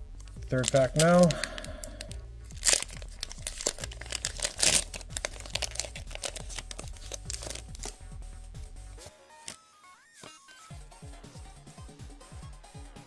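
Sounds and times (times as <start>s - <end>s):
foil wrapper crinkling: 0.2s - 8.0s.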